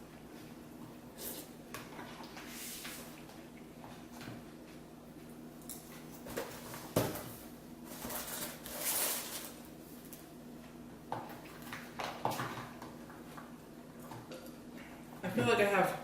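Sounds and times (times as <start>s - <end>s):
rustling and scraping: 5.9s - 9.7s.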